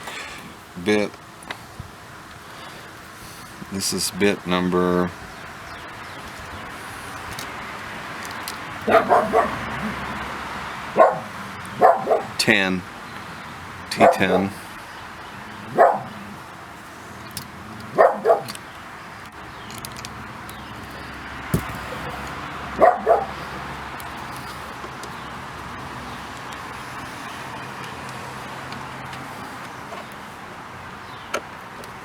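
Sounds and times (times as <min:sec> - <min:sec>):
dog barking: 0:08.8 - 0:10.0, 0:10.9 - 0:12.4, 0:14.0 - 0:14.6, 0:15.6 - 0:16.4, 0:17.9 - 0:18.6, 0:22.7 - 0:23.5.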